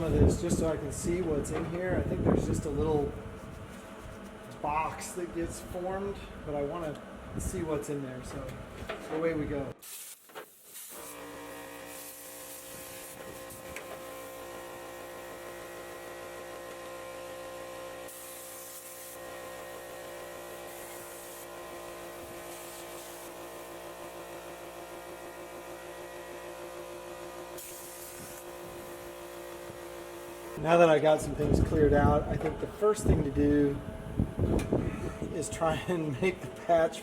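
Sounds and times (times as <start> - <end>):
short bursts of hiss: 9.8 - 14.3, 27.6 - 28.6
power tool cutting sheet metal: 9.8 - 30.6.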